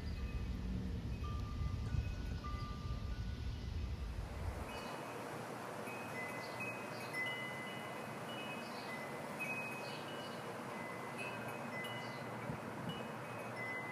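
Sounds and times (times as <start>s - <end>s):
steady hiss: 0.0s - 13.9s
chimes ringing: 5.9s - 13.9s.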